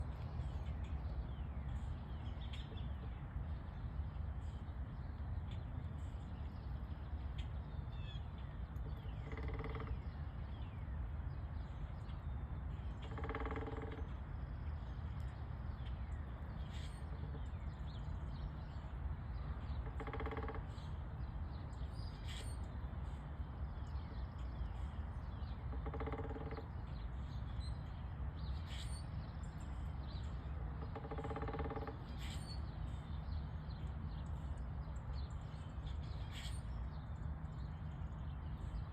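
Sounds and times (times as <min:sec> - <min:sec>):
woodpecker hammering on wood: 0:08.8 - 0:10.2, 0:13.0 - 0:14.2, 0:19.6 - 0:20.9, 0:25.4 - 0:26.9, 0:30.5 - 0:32.2.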